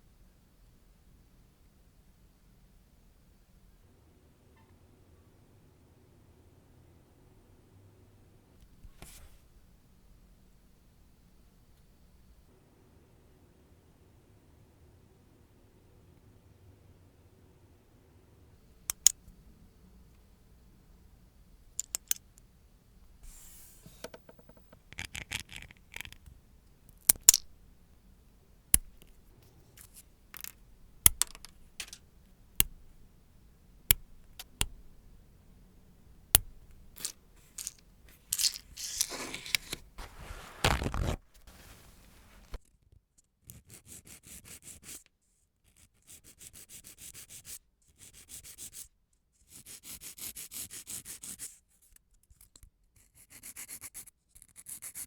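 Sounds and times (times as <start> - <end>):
sharp clicks and taps: 18.9 - 19.2, 24.0 - 27.9, 28.7 - 33.0, 33.9 - 34.9, 36.3 - 37.8
scraping on nails: 23.7 - 26.3, 27.0 - 28.0, 28.8 - 33.2, 36.3 - 39.9
nail being filed: 28.7 - 29.2, 29.8 - 31.9, 33.9 - 34.9, 36.3 - 39.8.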